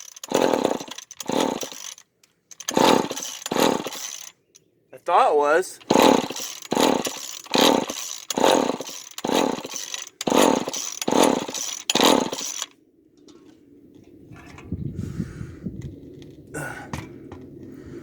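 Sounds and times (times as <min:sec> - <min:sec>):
chainsaw starter cord whirring: 0:00.0 - 0:04.4, 0:05.7 - 0:12.8.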